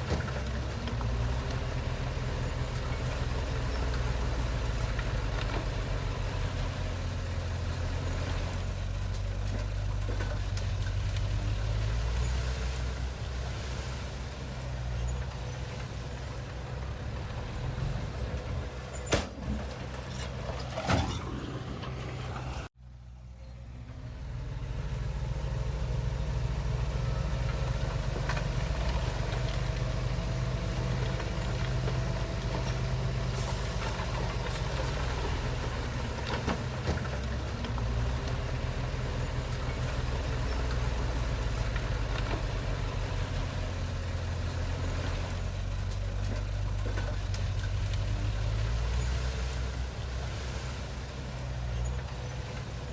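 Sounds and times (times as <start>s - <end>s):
diesel machinery rumbling: 0.0s - 52.9s.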